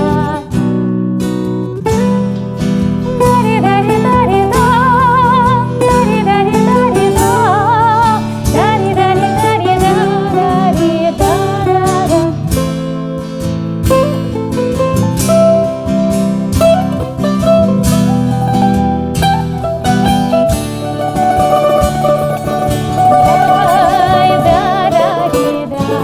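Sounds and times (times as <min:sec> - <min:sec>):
woman singing with vibrato: 0:00.0 - 0:00.7, 0:02.9 - 0:13.0, 0:20.8 - 0:26.0
acoustic guitar strumming: 0:00.0 - 0:26.0
bouzouki: 0:00.0 - 0:26.0.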